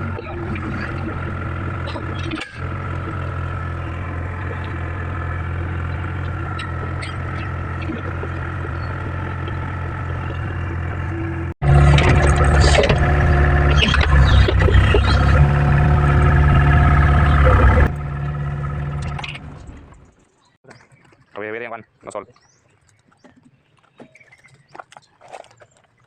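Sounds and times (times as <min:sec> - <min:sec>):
machine clatter: 0:00.0 - 0:20.1
diesel engine running: 0:00.0 - 0:20.2.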